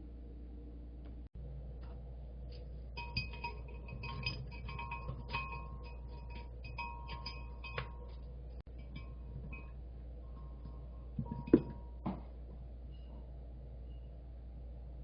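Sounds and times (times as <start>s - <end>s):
spoon clinking against glass: 3.0s - 9.8s.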